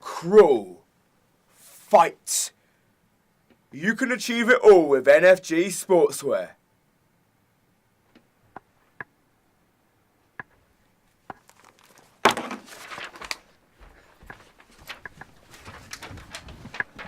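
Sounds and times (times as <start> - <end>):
rustling: 10.6 - 17.0.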